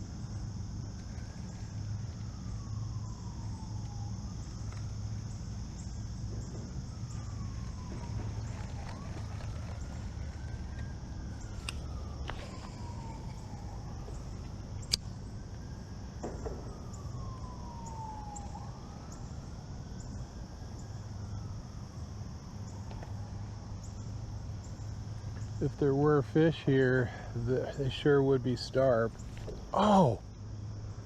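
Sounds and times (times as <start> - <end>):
siren wailing: 0.3 - 30.2
sharp clicks: 14.8 - 15.1.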